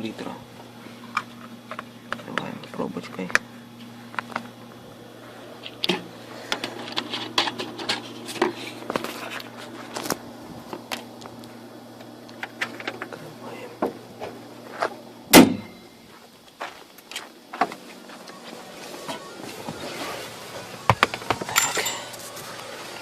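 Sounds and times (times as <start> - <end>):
steady low hum: 0.0 - 23.0
loud thump: 15.3 - 15.8.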